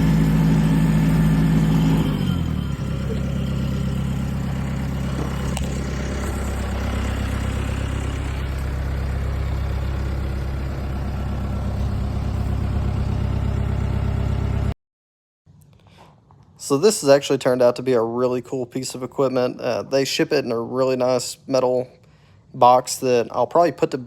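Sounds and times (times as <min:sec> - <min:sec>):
small tractor engine running: 0:00.0 - 0:14.8.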